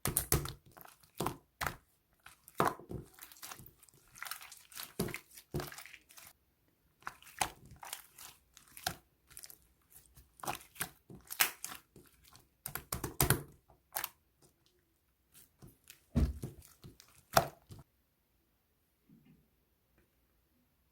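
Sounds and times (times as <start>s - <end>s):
slime crackling and popping: 7.1s - 14.1s.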